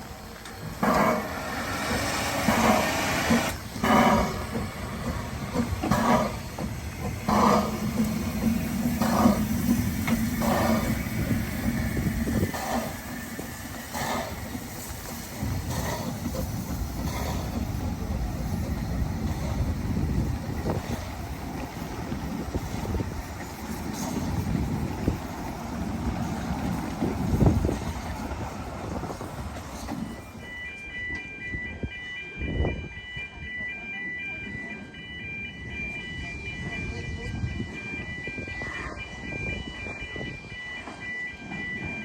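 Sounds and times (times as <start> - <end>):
steam hiss: 0.0 - 30.3
steam locomotive exhaust chuffs: 0.0 - 30.5.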